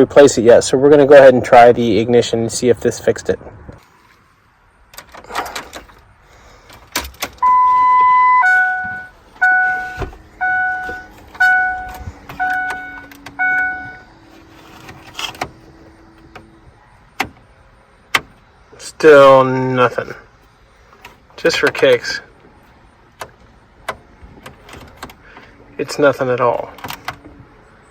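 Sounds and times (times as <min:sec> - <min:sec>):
dashboard warning chime: 0:07.4 - 0:14.3.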